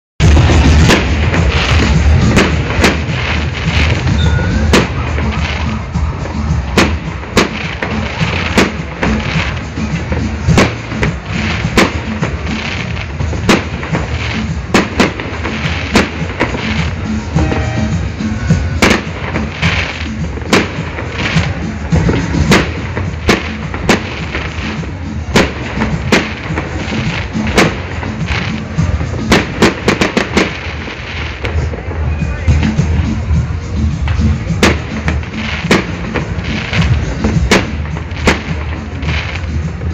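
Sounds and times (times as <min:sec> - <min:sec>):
rumble and crackle of fireworks: 0:00.2 - 0:39.9
steady low rumble: 0:10.3 - 0:22.5.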